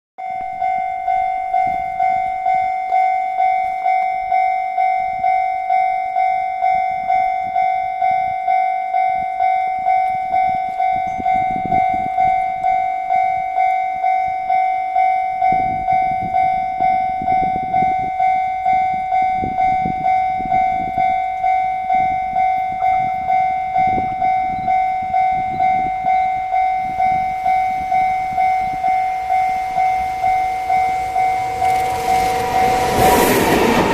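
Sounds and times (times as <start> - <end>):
level crossing alarm bell ringing: 0.2 - 33.9
train rumbling: 17.2 - 33.9.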